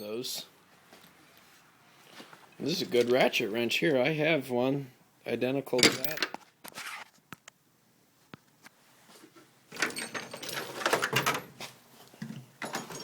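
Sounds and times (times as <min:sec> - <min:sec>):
metal tools rattling in toolbox drawer: 0:09.8 - 0:11.5, 0:12.6 - 0:13.0.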